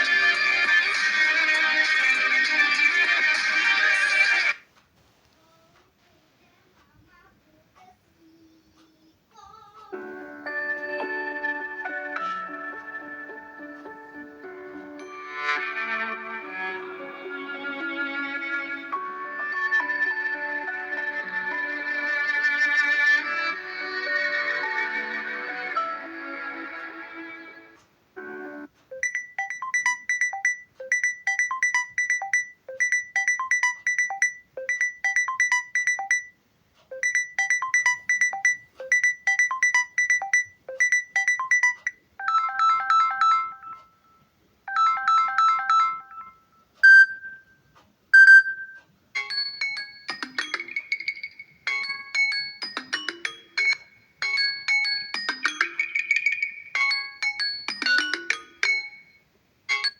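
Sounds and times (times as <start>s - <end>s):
bell-like chiming melody: 10.0s - 16.5s, 18.8s - 22.2s, 49.2s - 59.9s
electronic ringtone notes: 10.0s - 26.2s, 28.2s - 36.3s, 36.9s - 47.5s, 48.2s - 59.9s
lower repeating ringtone figure: 28.2s - 36.3s, 36.9s - 44.1s, 44.7s - 47.4s, 48.2s - 59.9s.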